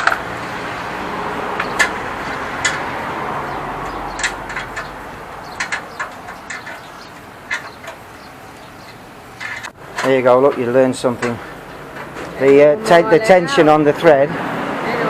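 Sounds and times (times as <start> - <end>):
metal clicks and knocks: 1.5 - 12.7.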